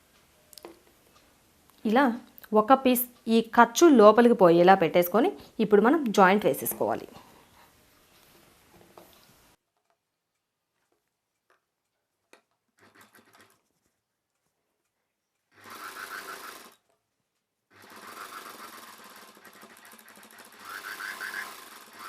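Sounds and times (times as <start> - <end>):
sewing machine stitching: 12.8 - 13.8, 15.5 - 16.9, 17.7 - 22.0.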